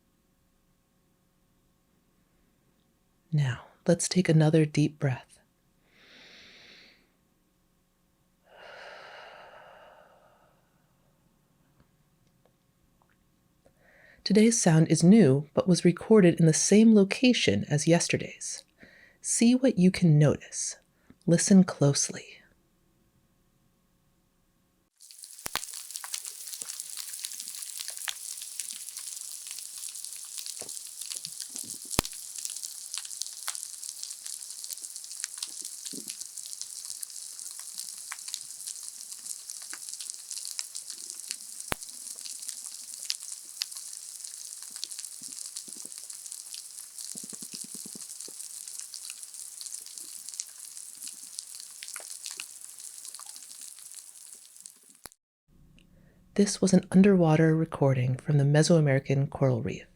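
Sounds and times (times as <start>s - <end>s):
snapping shrimp clicks crackling: 25.0s - 55.2s.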